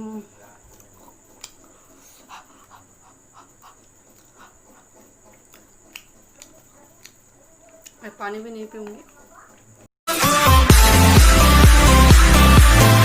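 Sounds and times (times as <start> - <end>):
mouth clicks: 0.6 - 8.0
person panting: 1.6 - 5.2.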